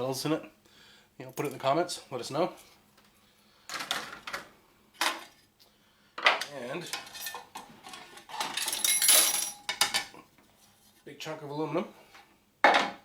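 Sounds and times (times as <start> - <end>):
metal parts clattering: 6.9 - 10.1.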